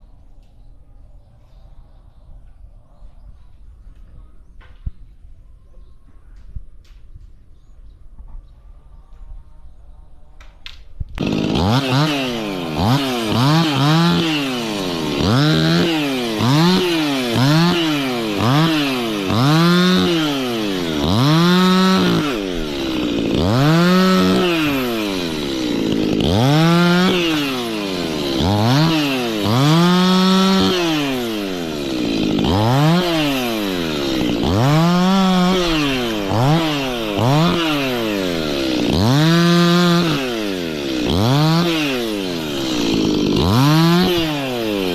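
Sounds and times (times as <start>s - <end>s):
chainsaw revving: 11.2s - 44.9s.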